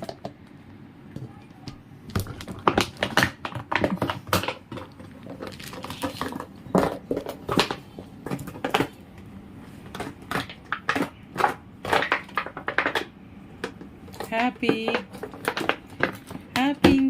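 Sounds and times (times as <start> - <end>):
dog chewing plastic bottle: 2.1 - 9.0, 9.9 - 16.6.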